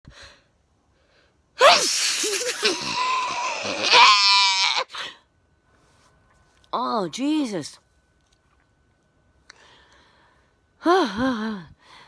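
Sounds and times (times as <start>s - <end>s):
woman sneezing: 1.6s - 3.5s.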